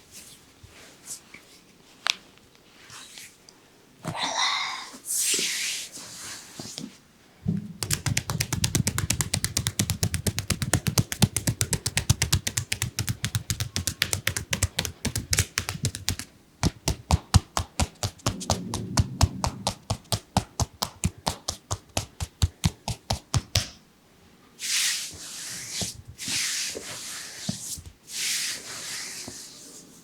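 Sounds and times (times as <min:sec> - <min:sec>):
hands slapping on a leg: 0:07.8 - 0:18.4, 0:19.4 - 0:23.8.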